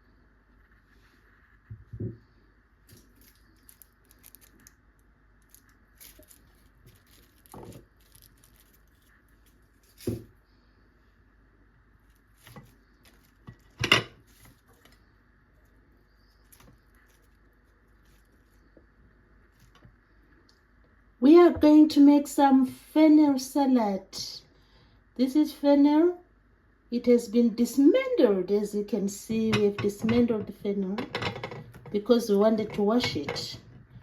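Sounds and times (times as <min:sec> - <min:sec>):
faint steady hum: 0:00.0 - 0:34.0.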